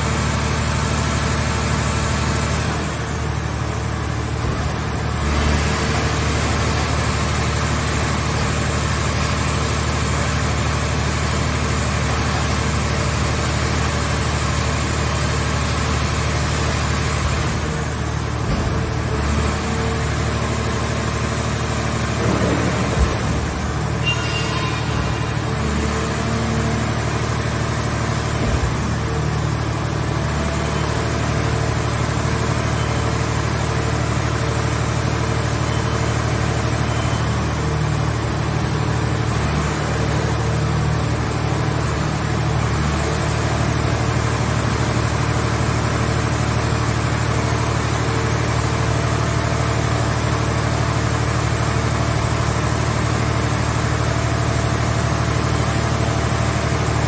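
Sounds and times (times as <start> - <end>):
baler engine droning: 2.7 - 52.6.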